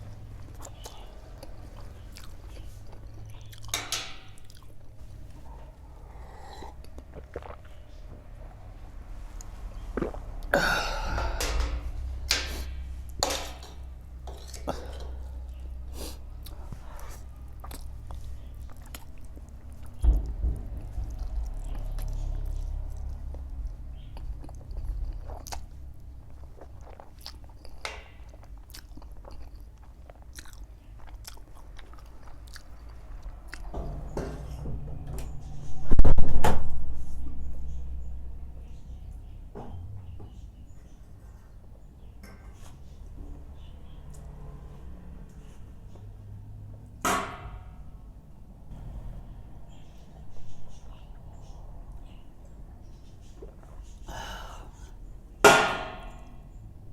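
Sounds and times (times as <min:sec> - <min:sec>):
chewing noodles: 0:00.1 - 0:11.4, 0:14.4 - 0:20.1, 0:21.0 - 0:33.7.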